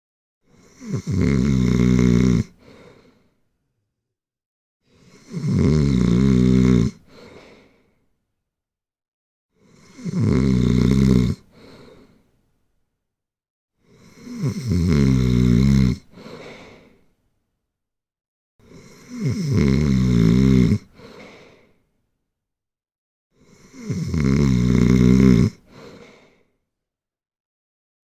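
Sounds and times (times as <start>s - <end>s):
person snoring: 0.5s - 3.1s, 4.9s - 7.4s, 9.6s - 11.6s, 13.8s - 17.0s, 18.7s - 21.7s, 23.4s - 26.4s.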